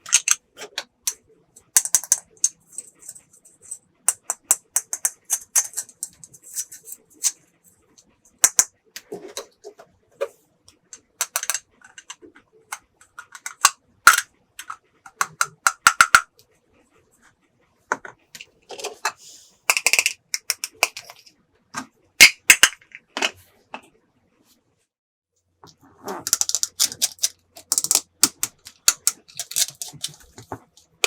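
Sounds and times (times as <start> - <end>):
plastic toy pieces clicking: 0.0 - 7.4, 8.4 - 8.7, 11.0 - 16.3, 19.7 - 21.2, 22.2 - 23.3, 26.2 - 31.0.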